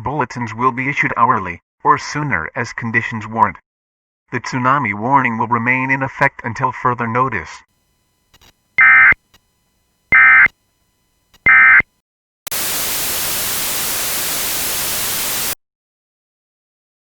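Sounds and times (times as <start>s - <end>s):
loud radio static: 8.4s - 9.2s, 10.1s - 10.5s, 11.4s - 11.8s, 12.5s - 15.6s
shrill digital bursts: 8.8s - 9.2s, 10.1s - 10.5s, 11.4s - 11.8s, 12.5s - 15.6s.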